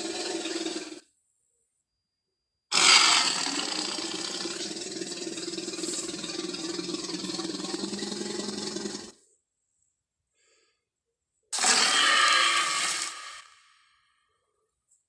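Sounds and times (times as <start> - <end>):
dinosaur roar: 0.0 - 1.0, 2.7 - 9.2, 11.6 - 13.9.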